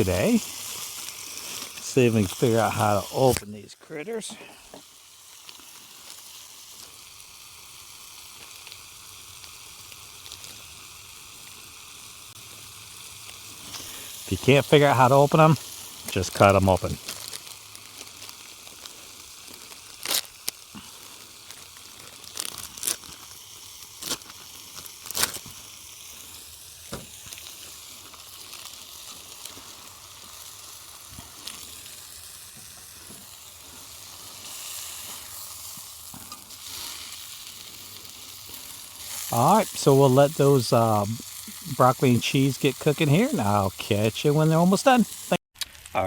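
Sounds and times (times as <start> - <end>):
meat sizzling in a pan: 0.0 - 45.4.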